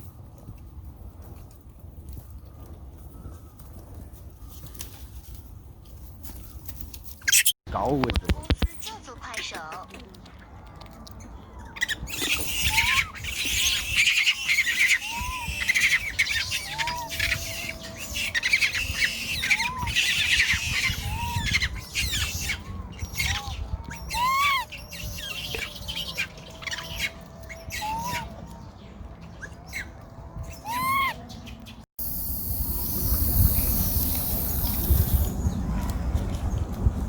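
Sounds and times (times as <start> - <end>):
baby monkey screaming: 11.8 - 28.4, 30.6 - 31.2, 32.0 - 35.3
rising-and-falling monkey calls: 11.8 - 28.4, 30.5 - 31.2.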